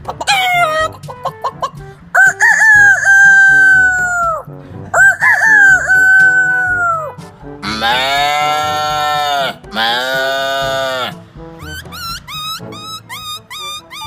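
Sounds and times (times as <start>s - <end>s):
man imitating rooster crow: 2.2s - 4.4s, 5.0s - 10.9s.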